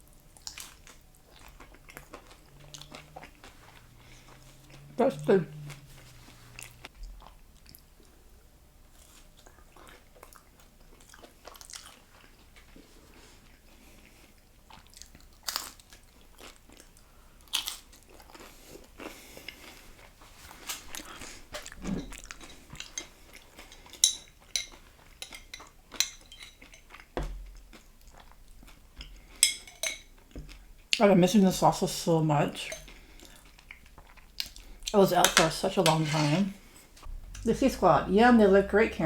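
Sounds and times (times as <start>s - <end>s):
crunchy shell chewing: 0.2s - 4.9s.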